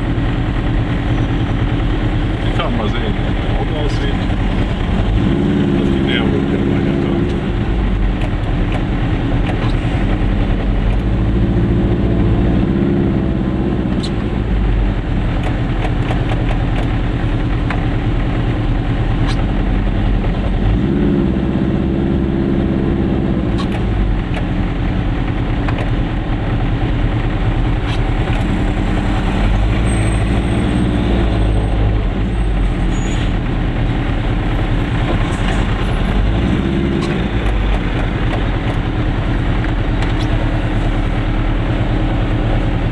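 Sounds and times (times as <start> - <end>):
two-stroke car engine running: 0.0 - 42.9.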